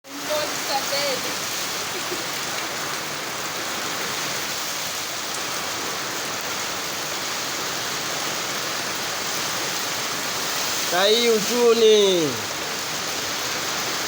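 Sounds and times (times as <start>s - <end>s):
rain hissing: 0.0s - 14.0s.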